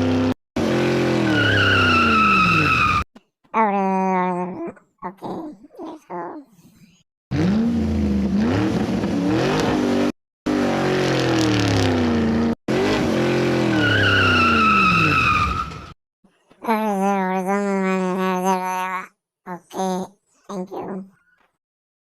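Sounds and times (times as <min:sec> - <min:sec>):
racing car engine revving: 0:00.0 - 0:03.0, 0:07.3 - 0:15.4.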